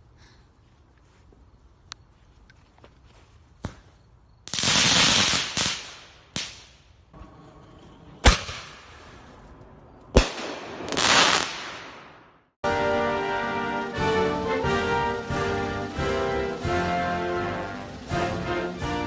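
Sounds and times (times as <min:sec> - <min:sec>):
fireworks hissing and crackling: 0:03.2 - 0:07.0, 0:08.2 - 0:19.0
firework bangs: 0:04.5 - 0:06.8, 0:08.2 - 0:09.4, 0:10.1 - 0:19.0.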